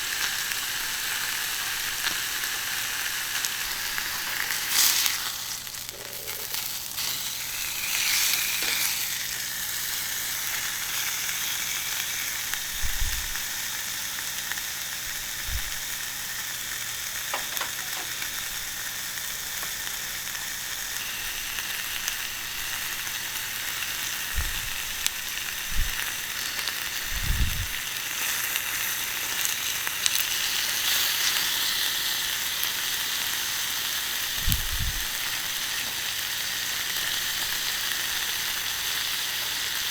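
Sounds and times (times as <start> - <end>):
steak sizzling on a griddle: 0.0 - 39.9.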